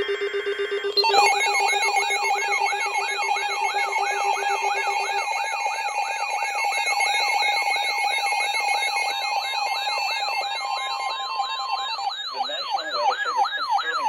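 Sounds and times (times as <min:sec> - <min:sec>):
electronic alarm falling wail: 0:00.0 - 0:14.0
lower pulsing beep: 0:00.0 - 0:14.0.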